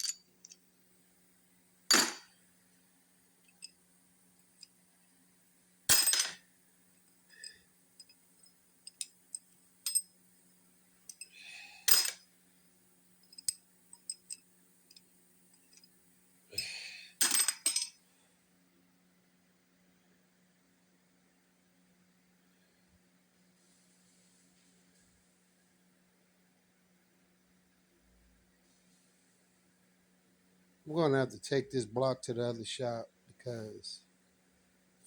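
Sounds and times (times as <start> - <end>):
metal parts clinking: 0.0 - 0.6, 5.9 - 6.4, 8.8 - 10.1, 11.1 - 12.2, 13.2 - 15.0, 17.2 - 17.9.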